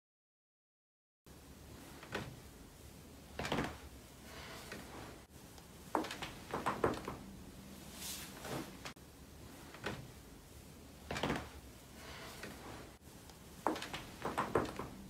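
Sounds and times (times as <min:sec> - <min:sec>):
low room hum: 0:01.3 - 0:15.0.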